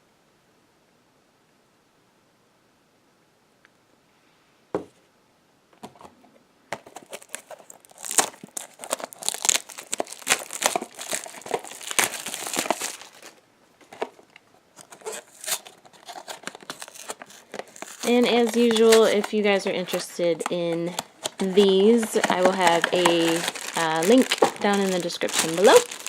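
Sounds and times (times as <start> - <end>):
plastic wrapping crinkling and tearing: 6.8 - 26.0.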